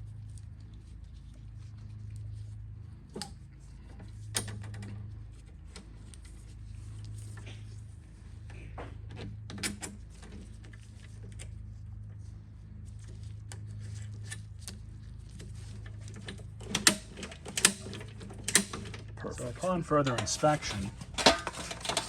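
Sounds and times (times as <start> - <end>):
steady low hum: 0.0 - 22.0
mower parts clicking and rattling: 15.3 - 22.0.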